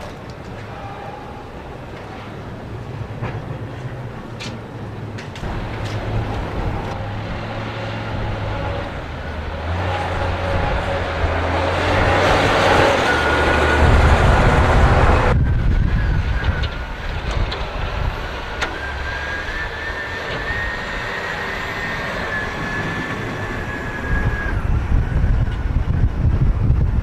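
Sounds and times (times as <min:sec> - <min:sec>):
city vehicle noise: 0:00.0 - 0:27.0
wind rumbling on microphone: 0:01.5 - 0:27.0
steady high whine: 0:05.4 - 0:26.8.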